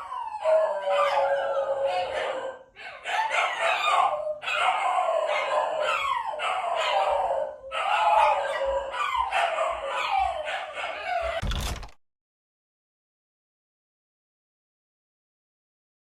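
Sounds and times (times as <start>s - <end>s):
dogs howling together: 0.0s - 11.4s.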